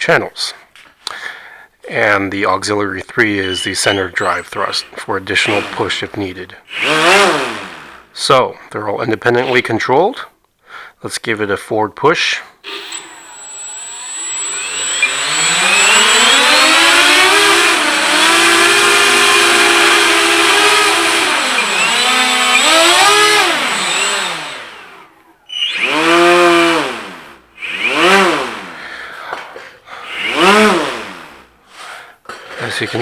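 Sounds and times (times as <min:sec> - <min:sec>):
electric motors whining: 0:03.3 - 0:06.0, 0:06.7 - 0:08.0, 0:12.7 - 0:28.8, 0:30.0 - 0:31.5.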